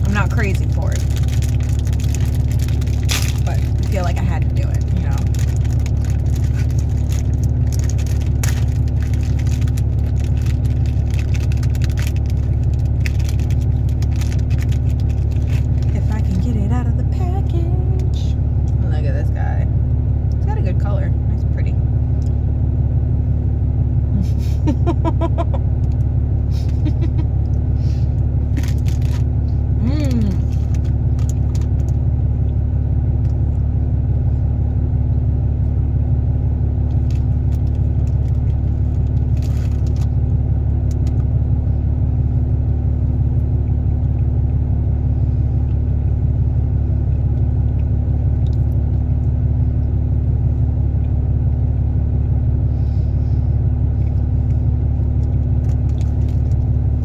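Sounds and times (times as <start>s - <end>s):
steady low rumble: 0.0s - 57.0s
crunchy cookie chewing: 1.0s - 16.0s, 28.5s - 29.3s, 30.3s - 32.0s, 36.8s - 41.4s, 47.0s - 49.4s, 53.7s - 56.9s.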